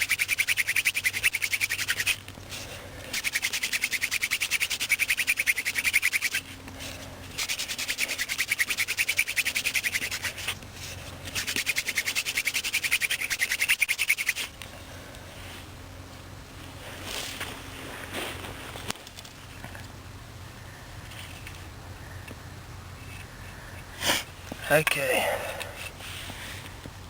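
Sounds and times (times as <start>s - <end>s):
hand drill spindle rubbing wood: 0.0s - 14.6s.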